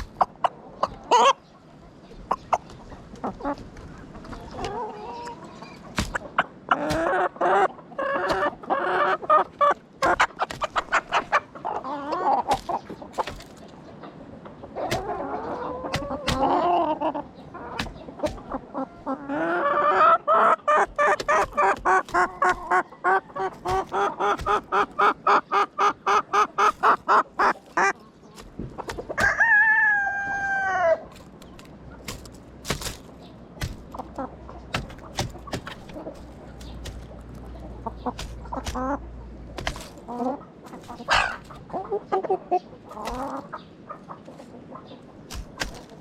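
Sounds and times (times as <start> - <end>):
chickens clucking: 0.0 - 46.0
rooster crowing: 29.2 - 31.0.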